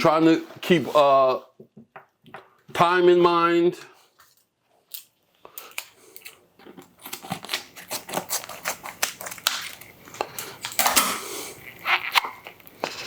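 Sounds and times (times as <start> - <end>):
utensils and cookware clattering: 8.6 - 11.5.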